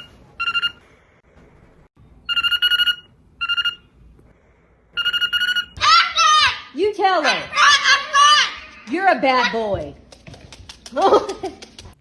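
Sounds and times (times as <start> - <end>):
trilling telephone ring: 2.3 - 3.8.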